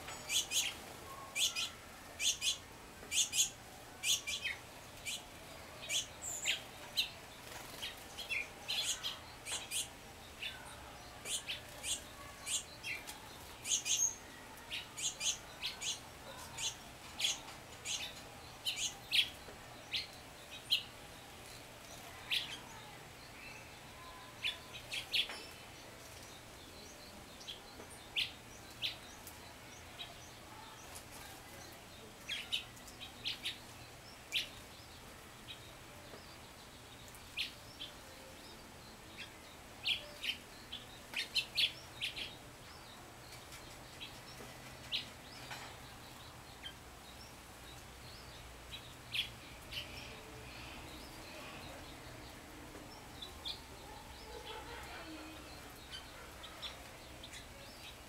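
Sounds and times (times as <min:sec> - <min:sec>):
songbirds chipping and tweeting: 0:00.0 - 0:58.0.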